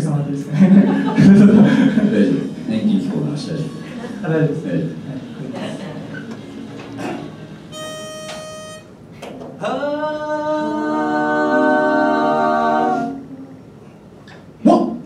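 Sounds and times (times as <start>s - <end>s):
reference note: 7.7s - 9.0s
group singing a held chord: 9.6s - 13.5s.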